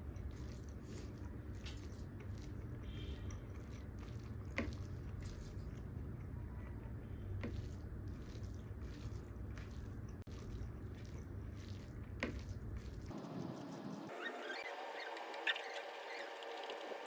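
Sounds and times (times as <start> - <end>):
wet chewing of soft food: 0.0 - 13.4.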